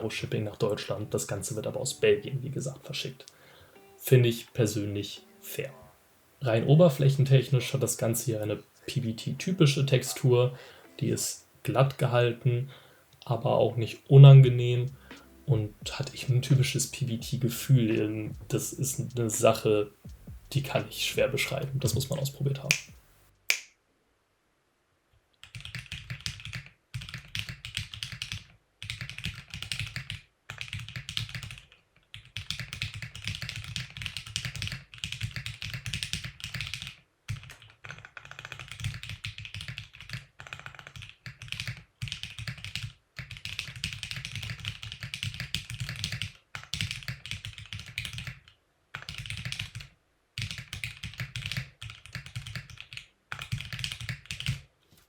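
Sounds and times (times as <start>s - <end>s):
mechanical keyboard typing: 25.4s - 54.6s.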